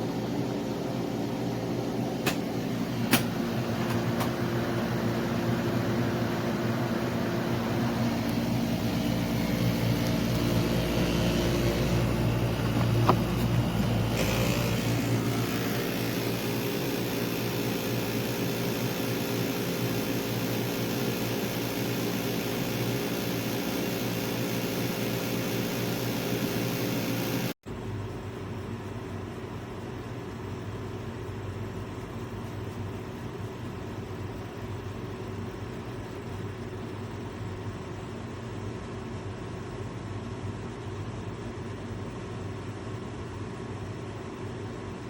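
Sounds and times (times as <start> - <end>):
air conditioner humming: 0.0 - 23.1.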